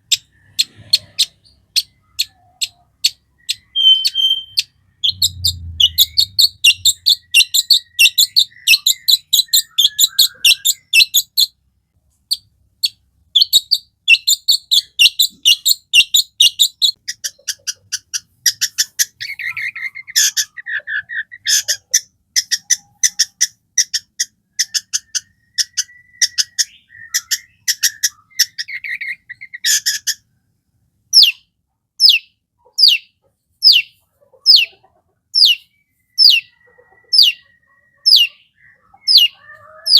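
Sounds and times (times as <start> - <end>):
shrike chattering song: 0.0 - 11.4
bird trilling warble: 0.2 - 11.2
falling bird whistles: 3.5 - 11.1.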